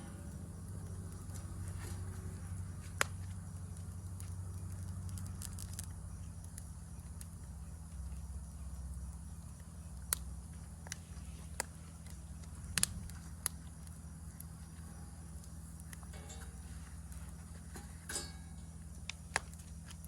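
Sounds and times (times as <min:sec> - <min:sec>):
campfire burning and crackling: 0:00.0 - 0:20.0
faint insect chirring: 0:00.0 - 0:20.0
campfire loud pops: 0:12.5 - 0:13.6.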